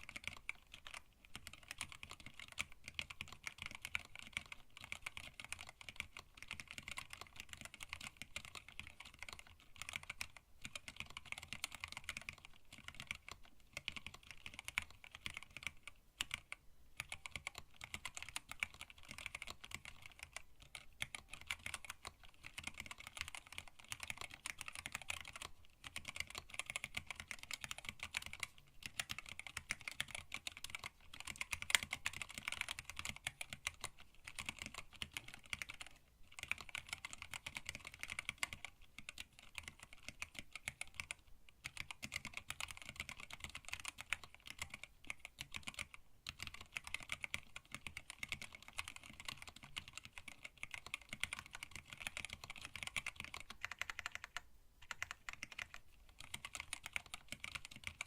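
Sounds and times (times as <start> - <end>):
mechanical keyboard typing: 0.0 - 58.0.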